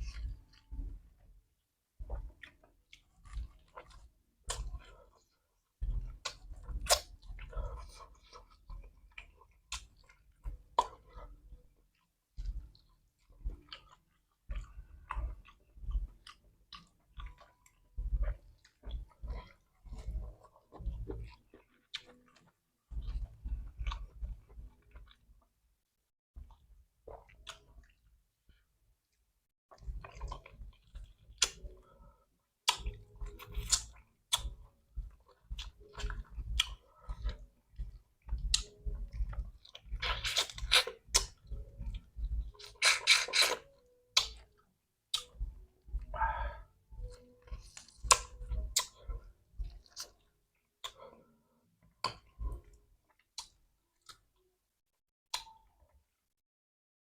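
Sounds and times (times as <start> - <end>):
person chewing crunchy food: 0.0 - 25.6, 26.4 - 28.7, 29.7 - 54.4.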